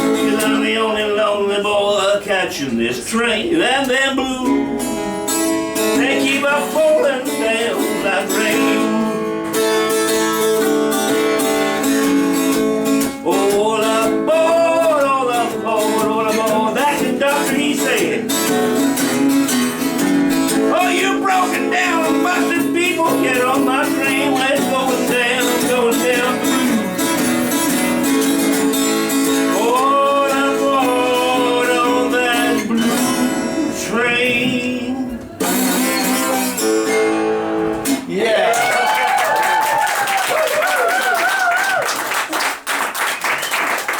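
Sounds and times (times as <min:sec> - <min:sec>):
acoustic guitar blues playing: 0:00.0 - 0:38.6.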